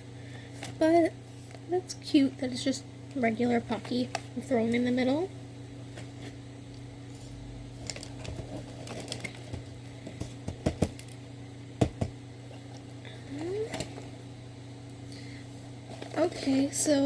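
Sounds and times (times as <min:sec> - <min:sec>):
steady low hum: 0:00.0 - 0:17.0
snack packaging rustling: 0:07.8 - 0:10.2.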